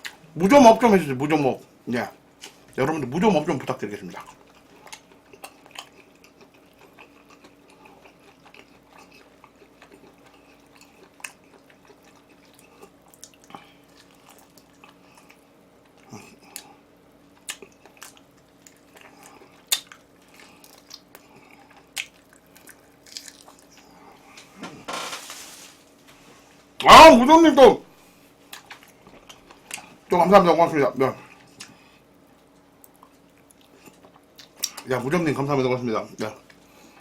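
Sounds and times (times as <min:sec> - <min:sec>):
faint steady hum: 0:00.0 - 0:37.0
chewing and biting: 0:04.1 - 0:24.4, 0:32.4 - 0:34.9.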